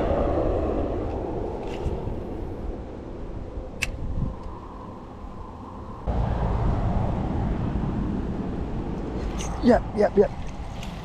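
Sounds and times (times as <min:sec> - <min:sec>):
wind buffeting microphone: 0:00.0 - 0:11.0
sharp click: 0:03.8 - 0:04.0.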